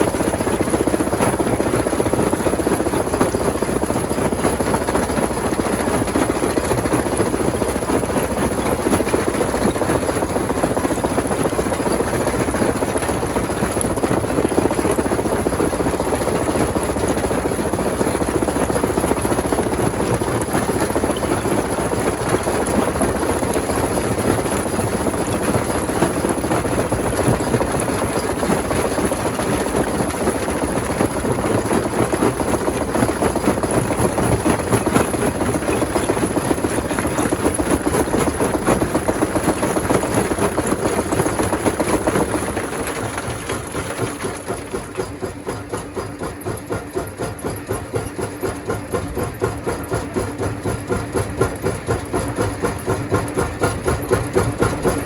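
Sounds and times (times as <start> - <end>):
rock crusher grinding: 10.8 - 45.4.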